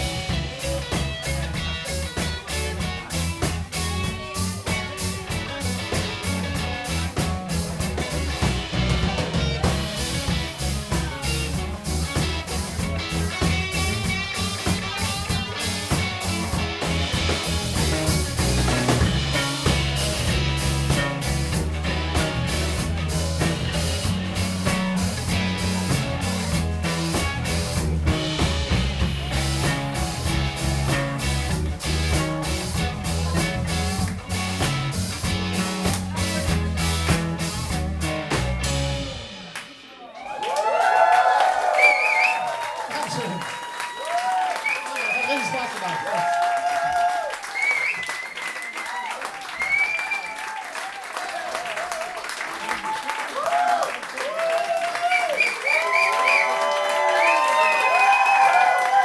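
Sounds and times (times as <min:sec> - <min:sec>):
drum kit steady beat: 0:00.0 - 0:40.4
rock band playing live: 0:00.0 - 0:51.0, 0:51.9 - 0:59.0.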